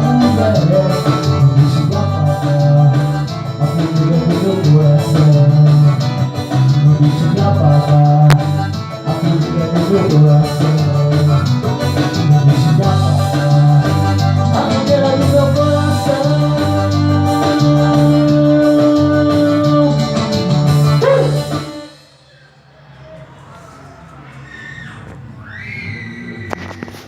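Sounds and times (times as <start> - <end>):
steady bass beat: 0.0 - 21.8
band music: 0.0 - 22.6.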